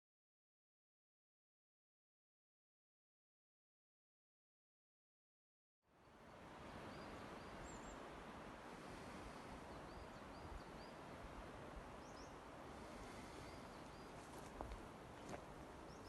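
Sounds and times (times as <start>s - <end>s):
soft woodland background rush: 5.9s - 16.0s.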